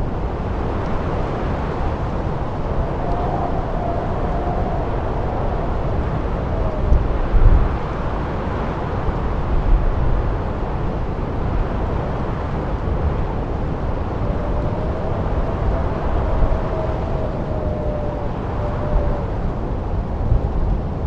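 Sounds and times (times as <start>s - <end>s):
blizzard wind gusting: 0.0s - 21.0s
faint thin howl: 1.5s - 7.9s, 12.8s - 20.0s.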